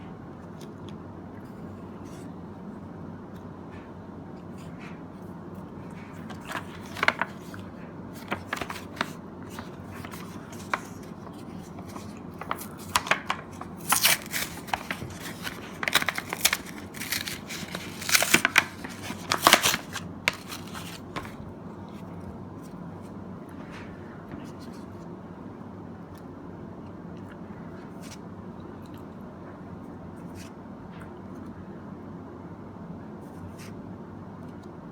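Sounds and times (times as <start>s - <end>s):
trading cards flipping and snapping: 6.2s - 21.4s.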